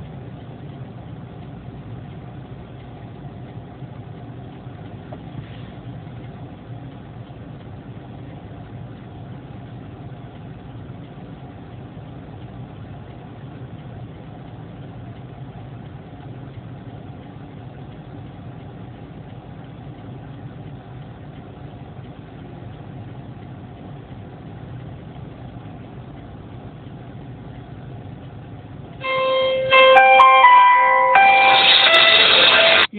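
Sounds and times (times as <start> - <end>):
vehicle engine and road hum: 0.0 - 32.9
electronic stepped chime: 29.0 - 32.9.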